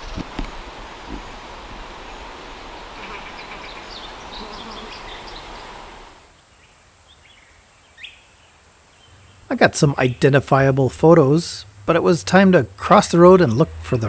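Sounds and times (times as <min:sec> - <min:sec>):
outdoor background noise: 0:00.0 - 0:14.0
bird chirping: 0:02.0 - 0:08.3.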